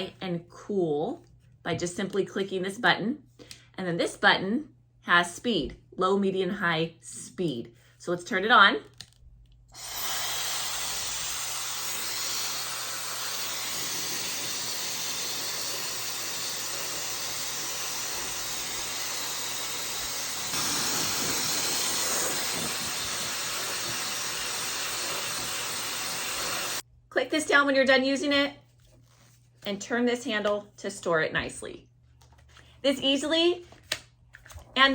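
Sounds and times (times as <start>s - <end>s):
hair dryer blowing air: 9.8s - 26.8s.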